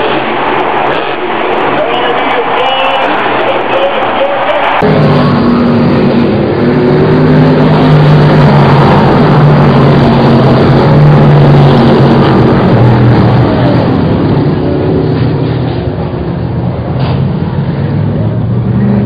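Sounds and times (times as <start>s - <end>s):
road and wind noise: 0.0s - 19.0s
car engine under load: 4.6s - 19.0s.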